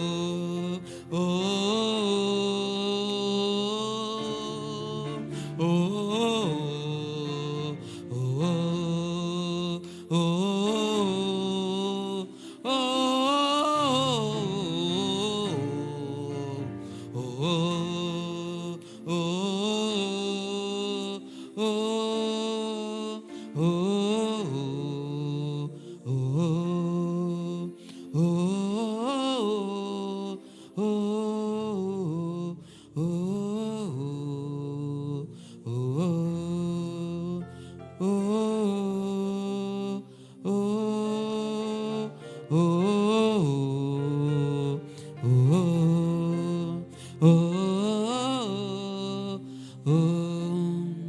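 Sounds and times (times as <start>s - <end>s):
held background chord: 0.0s - 51.0s
person singing wordless notes: 0.0s - 51.0s.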